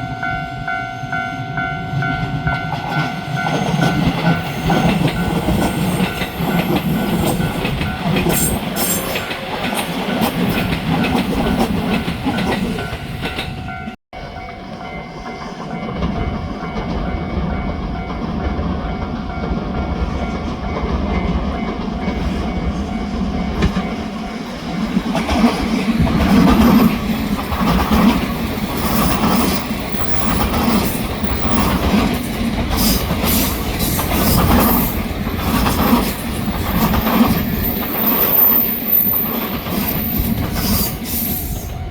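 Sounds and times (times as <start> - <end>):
level crossing warning bell: 0.0 - 25.4, 26.4 - 41.9
train wheels clattering over rail joints: 15.2 - 41.7.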